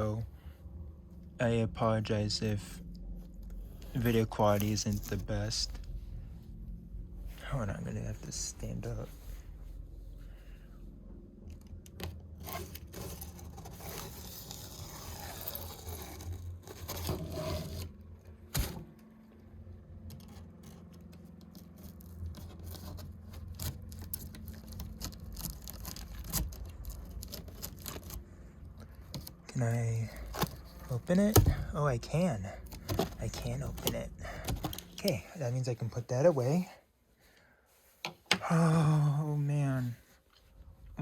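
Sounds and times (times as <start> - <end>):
rustles and clicks: 11.2 - 36.5
cardboard and tape tearing: 12.3 - 18.8, 20.2 - 28.3, 30.0 - 31.6, 32.6 - 35.2.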